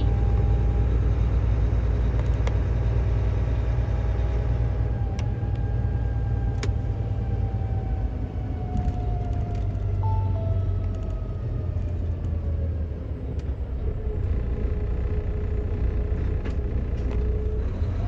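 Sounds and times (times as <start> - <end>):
road noise: 0.0 - 18.0
truck diesel engine rumble: 0.0 - 18.0.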